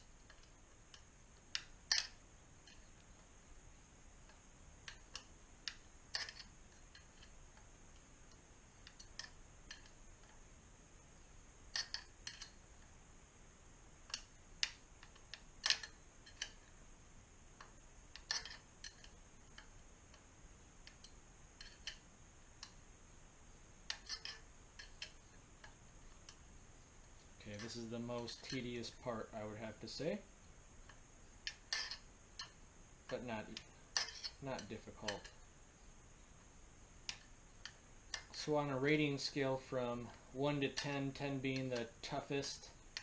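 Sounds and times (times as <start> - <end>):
faint steady hiss: 0.0 - 43.0
allen key clicks and taps: 4.3 - 10.4, 11.7 - 12.9, 14.0 - 16.8, 17.6 - 22.8, 23.9 - 26.4, 30.9 - 35.4.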